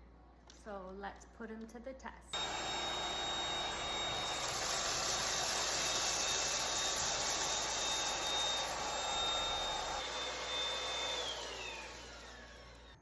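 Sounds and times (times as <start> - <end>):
vacuum cleaner motor whine: 2.4 - 13.0.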